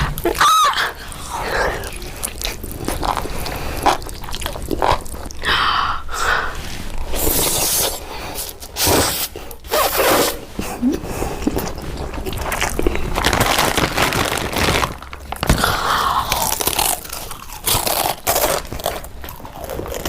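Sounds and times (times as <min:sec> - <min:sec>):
crunching and chewing: 0:01.0 - 0:05.5, 0:11.4 - 0:20.0.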